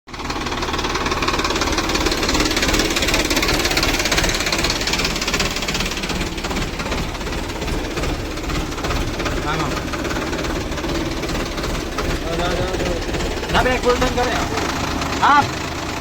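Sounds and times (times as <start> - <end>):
diesel engine running: 0.1 - 16.0.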